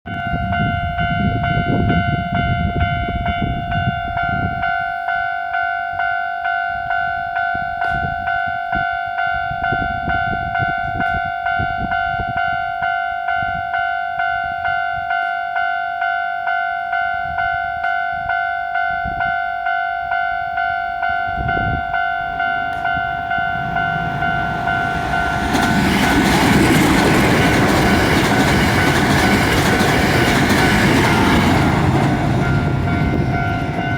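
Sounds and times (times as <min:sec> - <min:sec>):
level-crossing warning bell: 0:00.1 - 0:33.9
electric train passing: 0:17.0 - 0:33.9.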